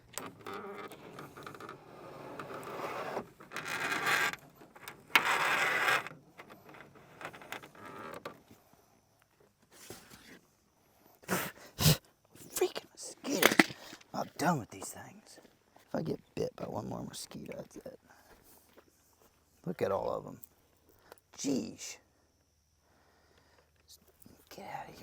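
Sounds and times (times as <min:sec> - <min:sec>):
rustling and scraping: 0:00.0 - 0:10.5, 0:13.3 - 0:15.9.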